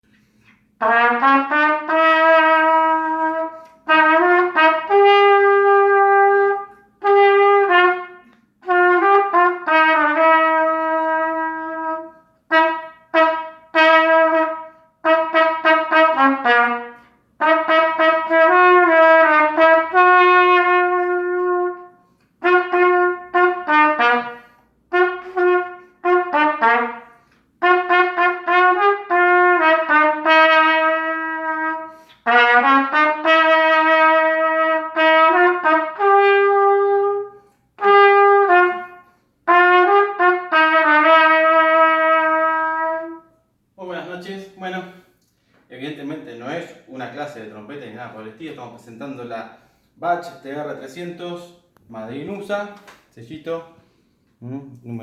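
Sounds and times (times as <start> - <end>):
solo trumpet melody: 0.1 - 43.6.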